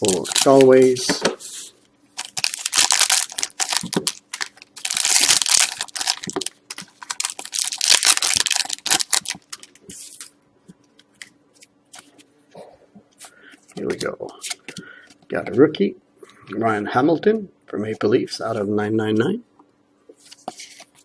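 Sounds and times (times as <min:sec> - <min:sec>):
wrappers being torn and crinkled: 0:00.0 - 0:01.0, 0:02.2 - 0:10.3.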